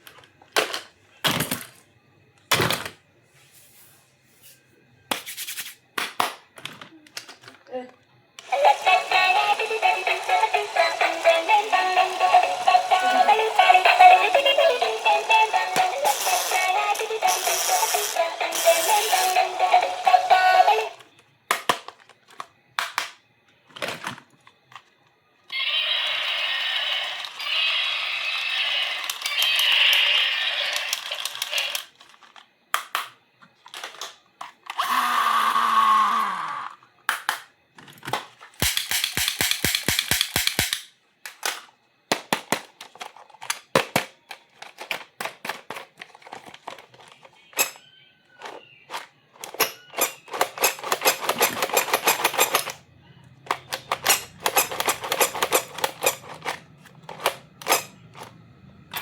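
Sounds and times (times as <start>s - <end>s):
plastic parts clicking: 6.2s - 7.7s, 30.8s - 34.9s, 37.1s - 47.8s, 48.4s - 52.8s, 53.4s - 59.0s.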